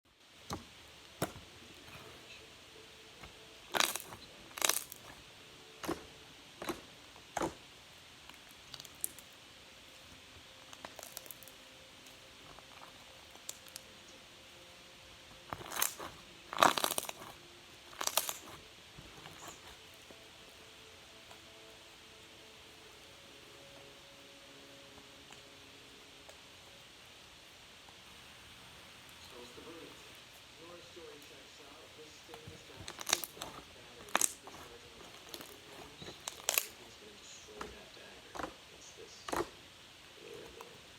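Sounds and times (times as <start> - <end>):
slime crackling and clicking: 3.7 - 5.2, 8.3 - 9.3, 10.7 - 11.6, 13.3 - 13.9, 15.5 - 18.6, 32.3 - 36.8, 39.3 - 39.5.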